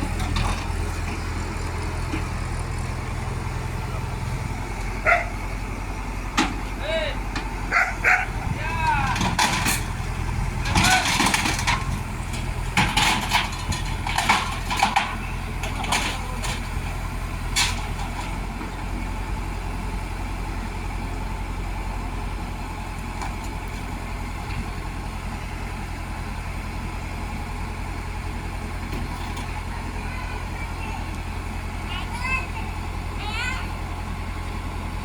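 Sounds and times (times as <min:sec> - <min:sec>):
diesel engine idling: 0:00.0 - 0:35.0.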